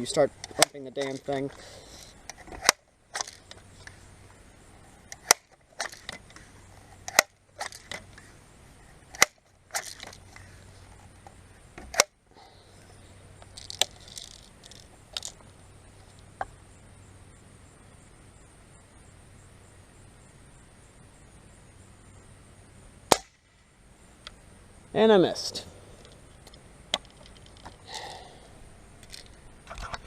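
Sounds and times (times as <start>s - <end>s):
air gun pump clacking: 0.4s - 3.6s.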